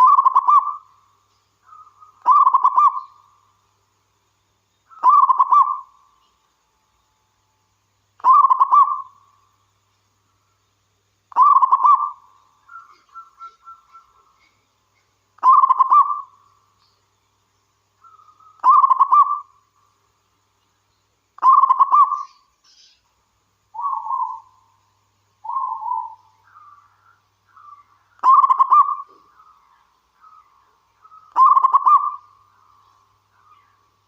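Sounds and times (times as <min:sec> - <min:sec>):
dove cooing: 0:00.0 - 0:00.9, 0:01.7 - 0:03.2, 0:05.0 - 0:05.9, 0:08.2 - 0:09.2, 0:11.3 - 0:14.6, 0:15.4 - 0:16.3, 0:18.0 - 0:19.5, 0:21.4 - 0:22.4, 0:23.8 - 0:24.5, 0:25.4 - 0:26.8, 0:28.2 - 0:29.3, 0:31.0 - 0:32.3.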